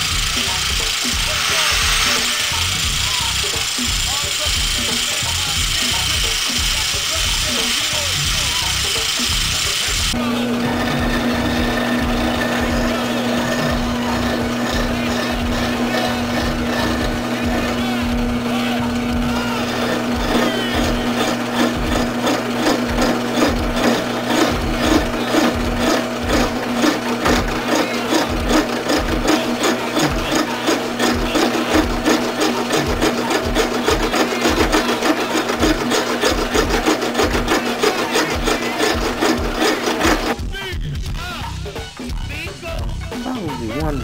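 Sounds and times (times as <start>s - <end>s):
electric drill humming: 0.0s - 40.4s
rasping strokes on metal: 10.6s - 40.4s.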